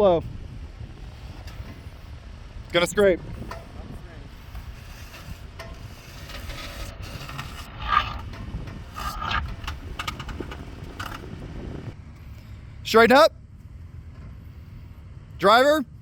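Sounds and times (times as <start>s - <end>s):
vehicle underside scraping on rock: 2.7s - 12.0s.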